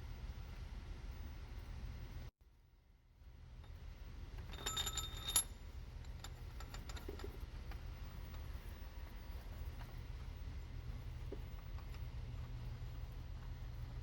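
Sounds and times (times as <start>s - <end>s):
low steady hum: 0.0s - 14.0s
light metallic clinks: 4.4s - 7.4s.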